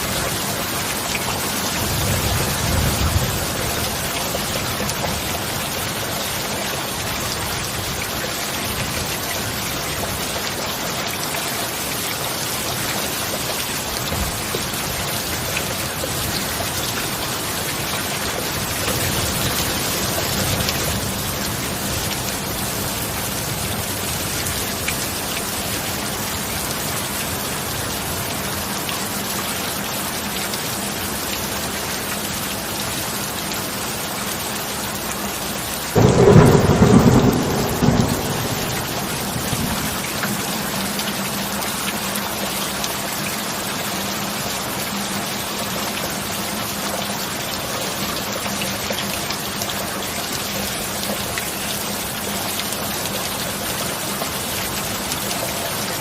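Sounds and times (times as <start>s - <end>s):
heavy rain: 0.0s - 56.0s
rumbling thunderclap: 36.0s - 40.7s.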